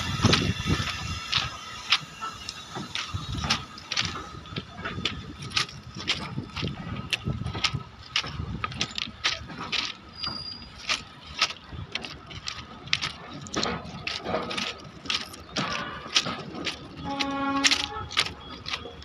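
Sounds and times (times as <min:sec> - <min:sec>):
train clattering and rattling: 0:00.0 - 0:19.0.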